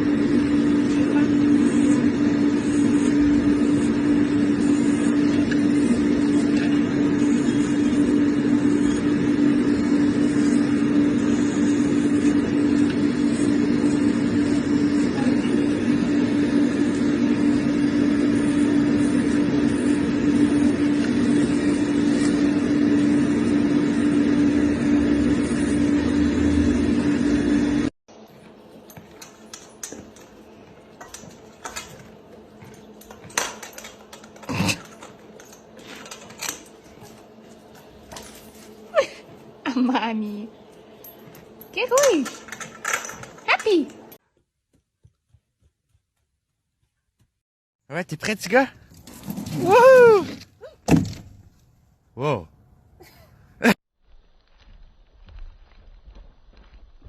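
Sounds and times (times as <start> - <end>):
loud mechanical drone: 0.0 - 43.4.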